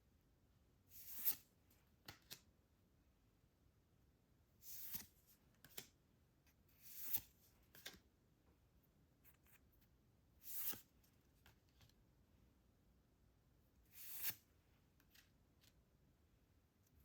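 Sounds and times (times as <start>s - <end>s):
cards sliding swishes: 0.9s - 2.4s, 4.6s - 5.9s, 6.8s - 8.0s, 10.4s - 11.5s, 13.9s - 14.5s.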